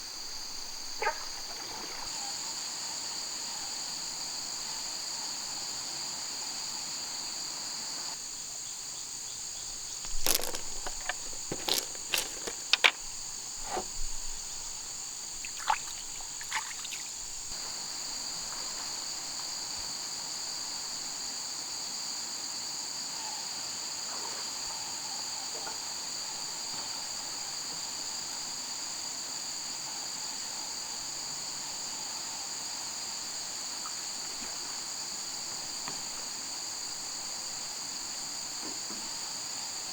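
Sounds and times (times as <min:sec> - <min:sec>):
high-pitched insect chorus: 0:00.0 - 0:39.9
sharp knocks and clicks: 0:10.0 - 0:13.1.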